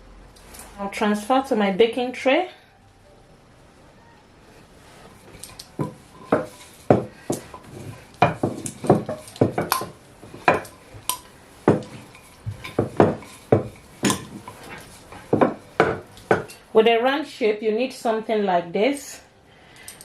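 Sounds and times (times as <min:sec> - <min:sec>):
utensils and dishes clinking: 0:05.2 - 0:16.6.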